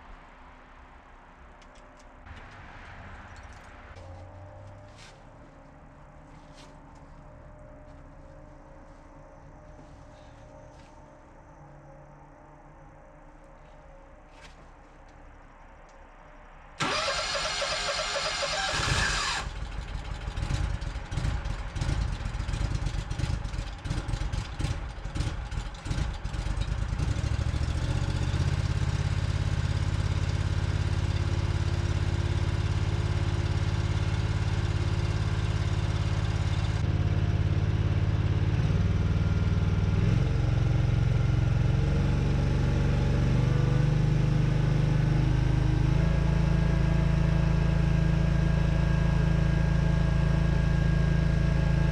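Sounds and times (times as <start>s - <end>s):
starter motor whine: 16.8s - 20.9s
engine starting and idling: 16.8s - 36.8s.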